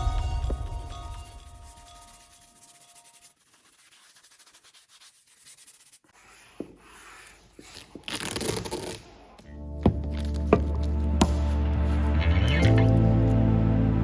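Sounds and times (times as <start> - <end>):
music: 0.0 - 3.2, 9.4 - 14.0
scrubbing on a surface: 1.4 - 8.3.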